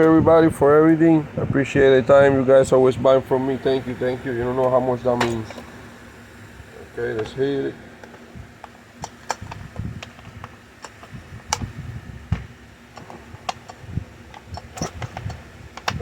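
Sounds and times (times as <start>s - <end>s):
clicks and knocks of hands working: 8.0s - 11.7s, 12.3s - 16.0s.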